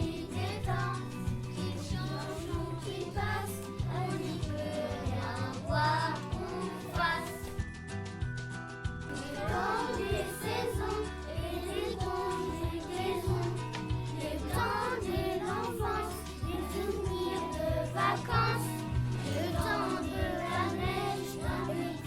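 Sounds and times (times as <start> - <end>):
children singing: 0.0 - 7.6, 9.1 - 22.0
instrumental backing with bass notes: 0.0 - 22.0.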